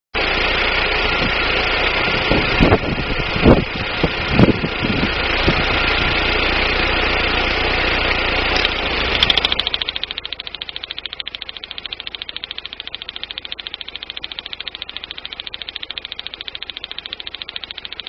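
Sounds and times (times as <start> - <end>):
car engine idling: 0.2 - 18.0
fast even ticking: 8.6 - 18.0
sharp irregular thumps: 8.6 - 18.0.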